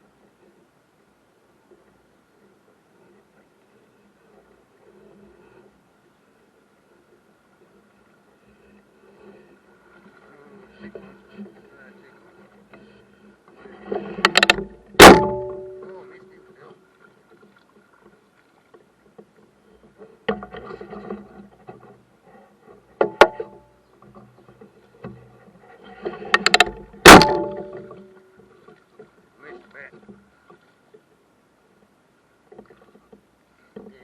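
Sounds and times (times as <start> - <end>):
sharp knocks against a boat: 13.9 - 16.4, 17.0 - 22.0, 22.8 - 25.4, 26.1 - 31.1.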